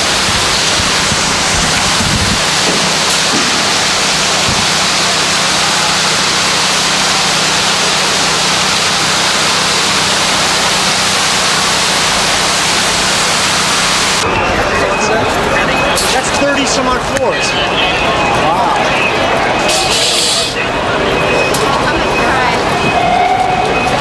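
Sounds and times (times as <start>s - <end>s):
loud steady hiss: 0.0s - 14.2s, 19.7s - 20.6s.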